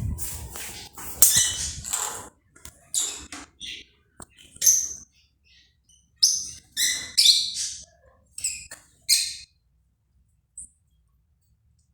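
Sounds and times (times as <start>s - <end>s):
bird chirping and squawking: 0.0s - 2.3s, 2.9s - 5.0s, 6.2s - 9.5s.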